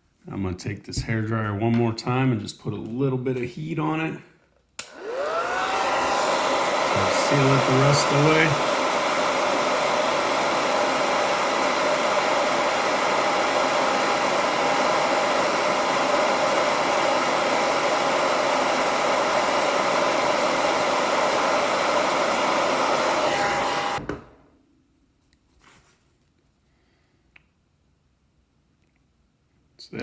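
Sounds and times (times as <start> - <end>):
hairdryer blowing: 4.8 - 24.4.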